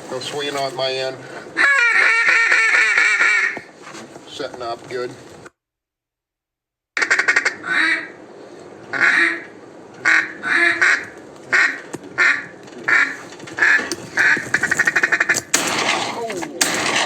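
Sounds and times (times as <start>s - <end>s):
duck call quacks: 1.6s - 3.7s, 7.0s - 8.2s, 8.9s - 17.0s.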